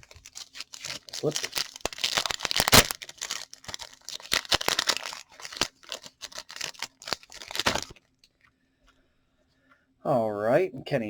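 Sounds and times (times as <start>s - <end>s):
wrapper crinkling and tearing: 0.0s - 8.0s.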